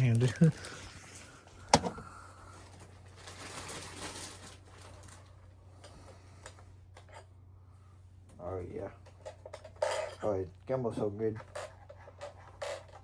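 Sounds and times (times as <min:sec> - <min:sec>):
hands rustling packaging: 0:00.0 - 0:05.4
steady low hum: 0:00.0 - 0:12.9.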